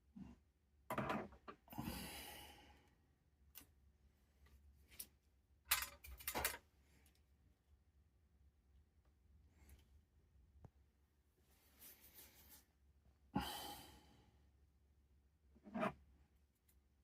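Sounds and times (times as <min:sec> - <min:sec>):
small parts clicking and knocking: 0:05.7 - 0:07.2.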